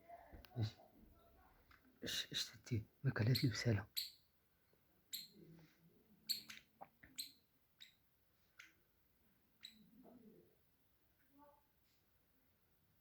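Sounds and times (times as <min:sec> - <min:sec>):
bird high chirps: 0:06.3 - 0:08.0.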